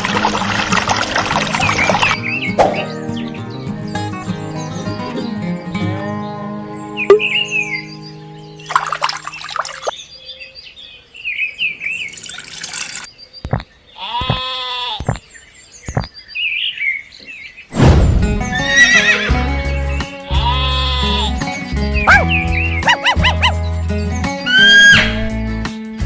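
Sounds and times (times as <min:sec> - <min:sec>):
background music: 0:00.0 - 0:09.4, 0:17.8 - 0:26.0
bird-like chirps: 0:01.7 - 0:17.7, 0:21.5 - 0:25.2
animal call: 0:14.0 - 0:15.2, 0:20.3 - 0:23.6, 0:24.4 - 0:25.3.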